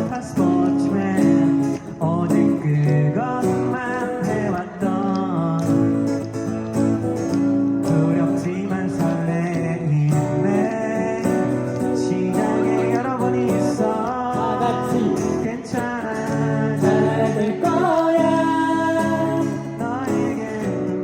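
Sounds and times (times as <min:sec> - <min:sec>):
acoustic guitar strumming: 0:00.0 - 0:21.0
person singing: 0:07.9 - 0:21.0.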